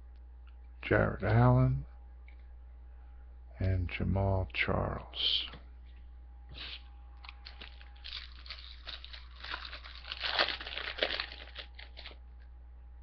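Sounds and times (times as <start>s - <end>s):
foil wrapper crinkling: 7.2s - 12.2s.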